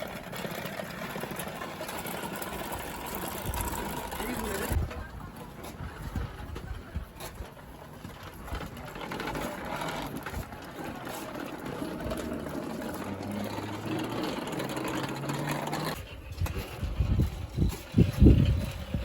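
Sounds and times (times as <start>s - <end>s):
vehicle engine humming: 0.0s - 5.1s, 9.2s - 16.0s.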